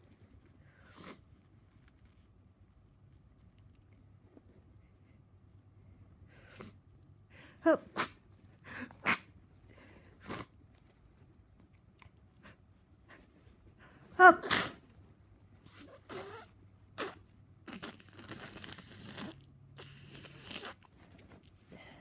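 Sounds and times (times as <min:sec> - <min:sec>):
sniffs and nasal breaths: 0:00.2 - 0:01.5, 0:06.1 - 0:11.1, 0:12.3 - 0:22.0
person sneezing: 0:07.6 - 0:08.2, 0:14.2 - 0:14.8.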